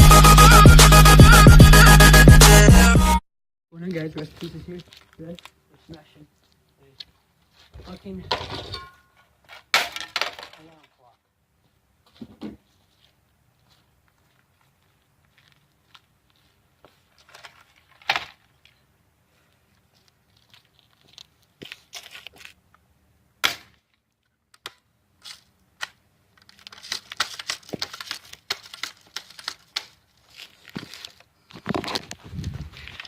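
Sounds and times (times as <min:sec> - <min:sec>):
dense crackling and tearing: 0:25.2 - 0:33.0.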